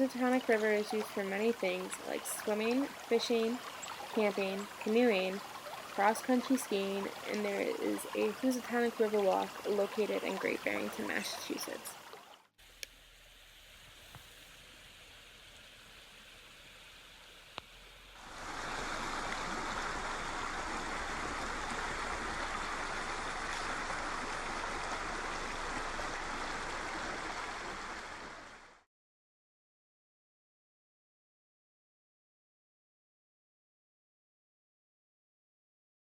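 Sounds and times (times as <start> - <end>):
river water flowing: 0.0 - 28.8.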